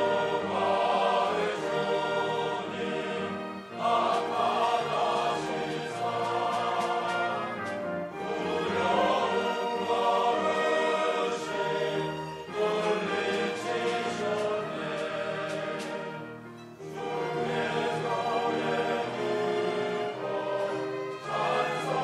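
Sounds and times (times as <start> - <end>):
church choir singing: 0.0 - 22.0.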